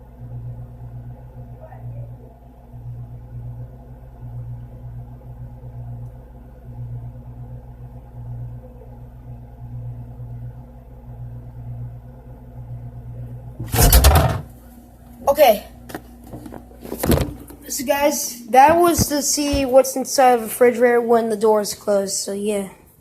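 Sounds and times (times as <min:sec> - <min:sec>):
refrigerator humming: 0:00.0 - 0:23.0
fridge door opening clatter: 0:13.6 - 0:14.6.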